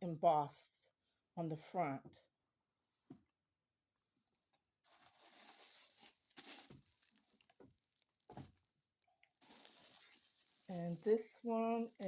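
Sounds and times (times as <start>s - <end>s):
packaging crinkling and rustling: 4.8s - 8.7s, 9.3s - 12.0s
sharp crackle: 4.9s - 8.3s, 9.4s - 12.0s.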